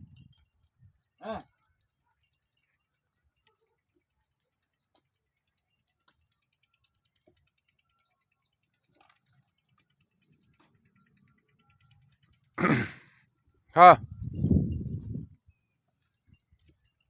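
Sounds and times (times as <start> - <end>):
faint bird chirping: 0.0 - 17.0
faint clicks: 2.2 - 12.5.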